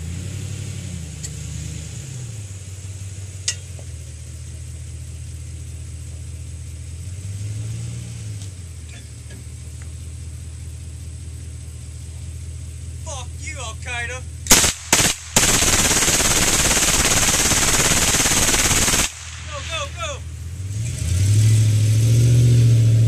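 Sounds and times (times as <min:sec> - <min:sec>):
engine idling: 0:00.0 - 0:20.8
sharp crack: 0:14.5 - 0:20.2.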